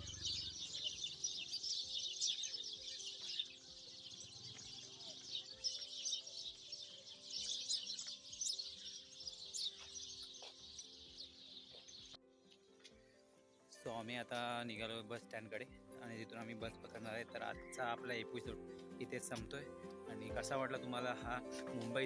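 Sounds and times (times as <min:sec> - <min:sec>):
small birds chirping: 0:00.0 - 0:22.0
soft background music: 0:00.0 - 0:22.0.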